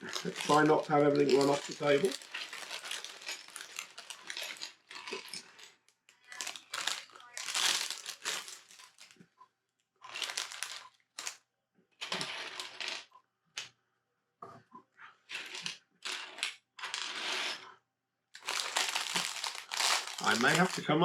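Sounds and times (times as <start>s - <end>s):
plastic bricks rattling on table: 0.0s - 9.1s, 10.1s - 11.4s, 18.4s - 20.8s.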